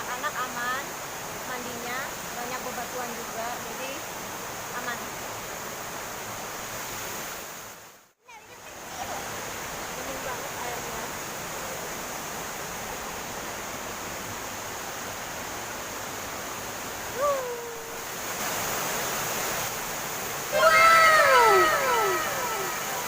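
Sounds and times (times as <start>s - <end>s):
waterfall rushing: 8.4s - 23.0s
pitched cries falling: 17.1s - 18.0s, 20.5s - 23.0s.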